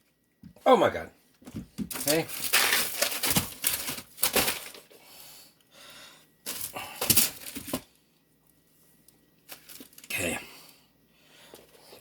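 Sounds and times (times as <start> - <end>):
freezer items rustling: 0.9 - 5.4, 6.4 - 8.1, 9.4 - 12.0.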